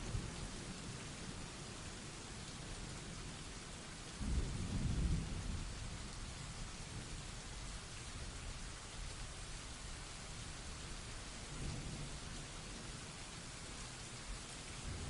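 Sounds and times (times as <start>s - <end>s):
heavy rain: 0.0s - 15.0s
low thunder rumble: 4.2s - 7.2s, 14.8s - 15.0s.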